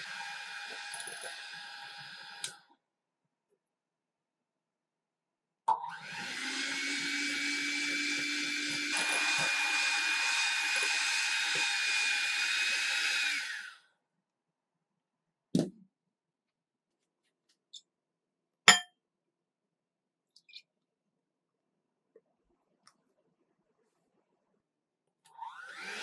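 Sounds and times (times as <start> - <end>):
electric mixer motor whining: 0.0 - 2.6, 5.9 - 13.8, 25.4 - 26.0.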